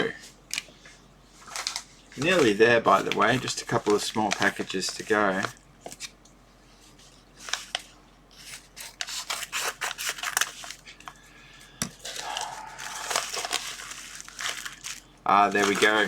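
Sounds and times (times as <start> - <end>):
packaging crinkling and rustling: 1.4 - 6.2, 7.4 - 11.1, 12.0 - 16.0.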